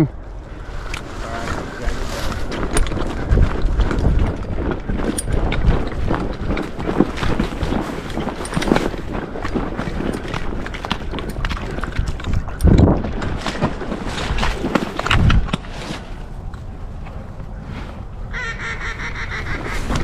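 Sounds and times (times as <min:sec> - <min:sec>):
wind buffeting microphone: 0:00.0 - 0:20.0
rustling movement: 0:00.1 - 0:20.0
nasal waterfowl call: 0:18.3 - 0:20.0.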